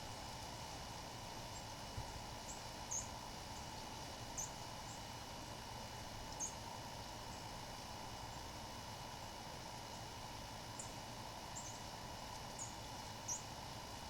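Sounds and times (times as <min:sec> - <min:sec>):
steady outdoor hiss: 0:00.0 - 0:14.0
songbird chirping: 0:01.5 - 0:05.1, 0:06.2 - 0:06.7, 0:10.7 - 0:13.6.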